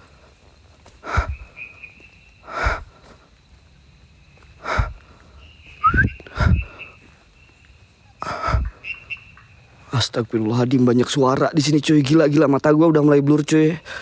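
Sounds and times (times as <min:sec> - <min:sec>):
heavy breathing: 0:00.0 - 0:01.8, 0:02.4 - 0:03.4, 0:04.4 - 0:07.2, 0:08.2 - 0:08.9, 0:13.8 - 0:14.0.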